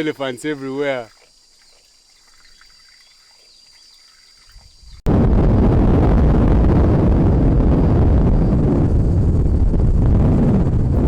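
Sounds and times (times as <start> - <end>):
insects trilling: 0.0 - 5.1
loud rushing roar: 5.1 - 11.0.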